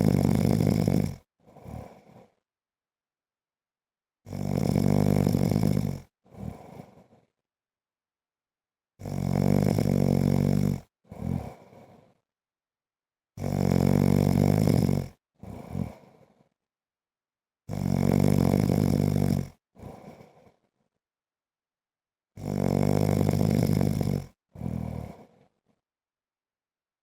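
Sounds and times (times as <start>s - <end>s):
man snoring: 0.0s - 2.4s, 4.3s - 7.1s, 9.0s - 12.1s, 13.4s - 16.3s, 17.7s - 20.4s, 22.4s - 25.5s
quiet breath: 0.7s - 2.5s, 6.3s - 7.4s, 11.1s - 12.3s, 15.4s - 16.7s, 19.8s - 21.0s, 24.6s - 25.8s.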